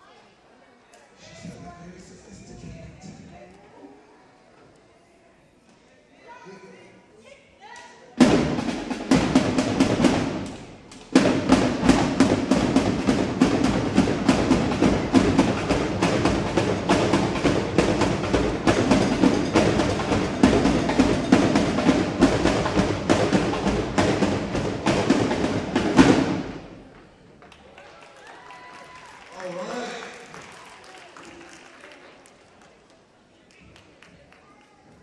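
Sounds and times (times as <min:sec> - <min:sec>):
drum line playing: 0:08.2 - 0:27.0.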